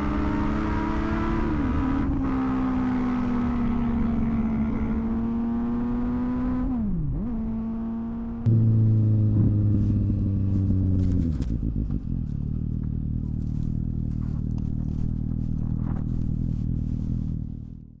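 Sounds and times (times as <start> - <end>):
motorcycle engine idling: 8.5 - 17.9.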